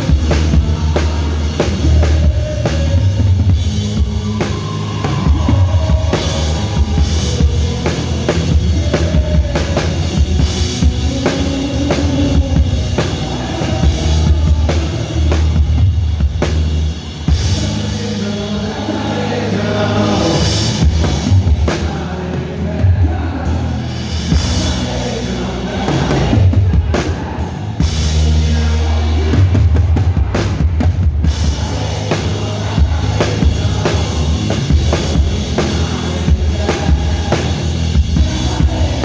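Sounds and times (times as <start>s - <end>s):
sustained bass notes: 0.0s - 39.0s
drum kit kick and snare: 25.7s - 39.0s.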